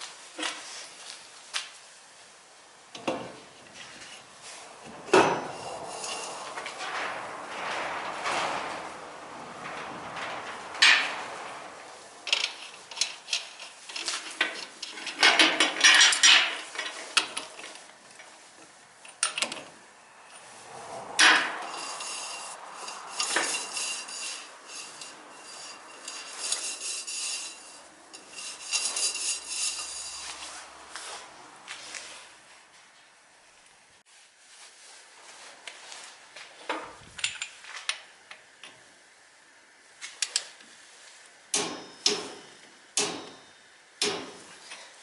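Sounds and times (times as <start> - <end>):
metal tools clinking and rattling: 12.3 - 17.4, 21.2 - 30.6.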